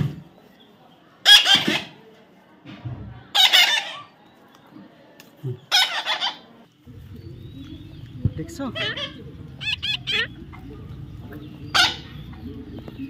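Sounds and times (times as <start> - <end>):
chicken calling: 5.7 - 13.0.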